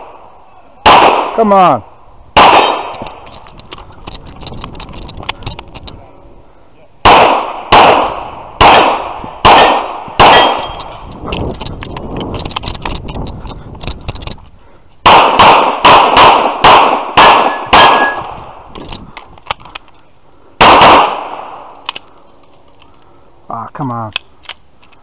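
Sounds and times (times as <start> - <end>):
pistol shots: 0.8 - 1.6, 2.4 - 3.2, 7.0 - 10.8, 15.0 - 18.4, 20.6 - 21.7
small clicks and rattles: 3.0 - 6.0, 10.7 - 14.5.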